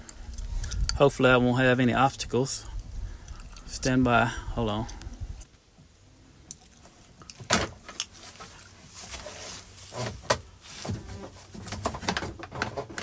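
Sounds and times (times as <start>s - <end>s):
wire scraping through plastic: 7.9s - 13.0s.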